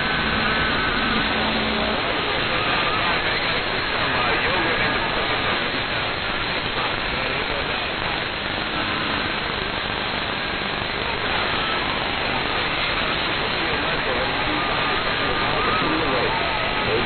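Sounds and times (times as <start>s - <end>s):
radio static hiss: 0.0s - 17.0s
weak radio voices: 0.0s - 17.0s.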